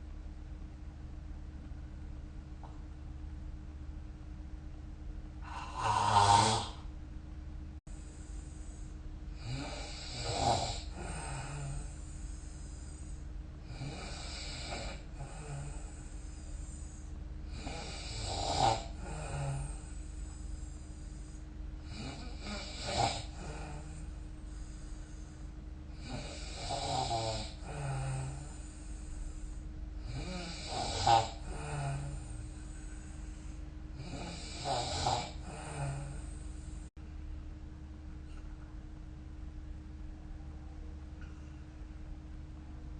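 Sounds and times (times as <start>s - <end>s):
steady low hum: 0.0s - 42.9s
person snoring: 5.4s - 6.9s, 8.1s - 25.3s, 25.9s - 36.9s.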